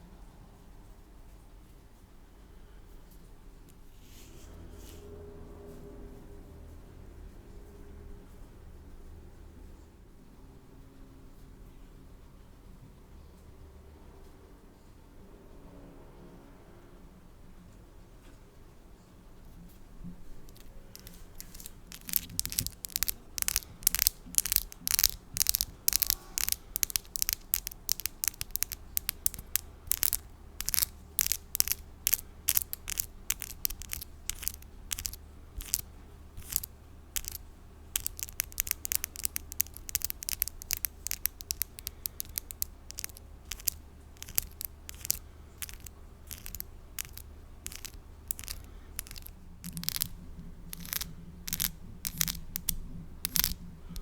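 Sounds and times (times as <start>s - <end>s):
faint low hum: 0.0s - 54.0s
nails tapping and scratching: 20.4s - 54.0s.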